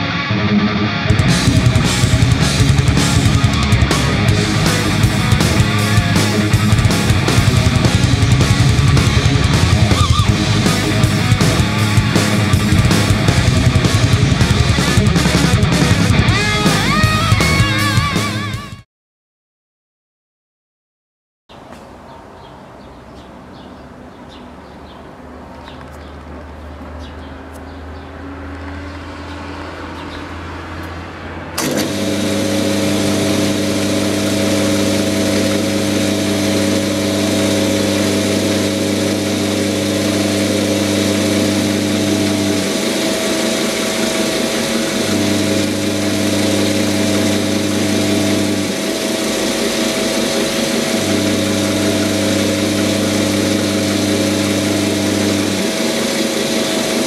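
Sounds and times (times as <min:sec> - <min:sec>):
lathe running: 0:01.1 - 0:18.6, 0:31.6 - 0:57.0.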